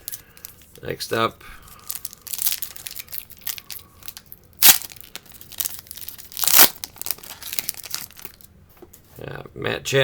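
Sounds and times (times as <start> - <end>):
wrapper crinkling: 1.7 - 8.5
wrapper ripping: 1.8 - 8.5.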